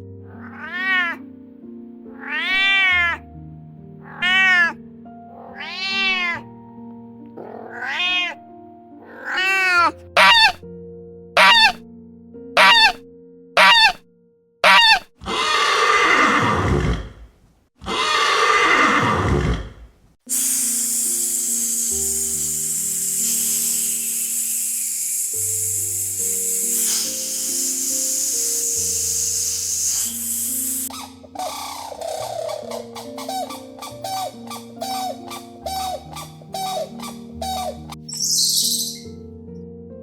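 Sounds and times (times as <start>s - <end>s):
background music: 0.0s - 10.6s, 25.5s - 40.0s
cat meowing: 0.3s - 1.2s, 2.2s - 3.2s, 4.0s - 4.8s, 5.5s - 6.5s, 7.6s - 8.4s, 9.1s - 10.6s, 11.4s - 11.8s, 12.6s - 13.0s, 13.6s - 14.0s, 14.6s - 15.6s.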